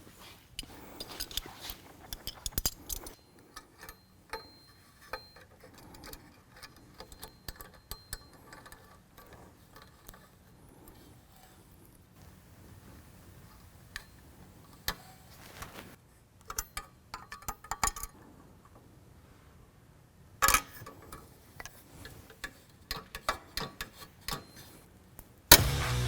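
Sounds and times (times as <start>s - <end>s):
hand tools clicking: 0.6s - 10.3s.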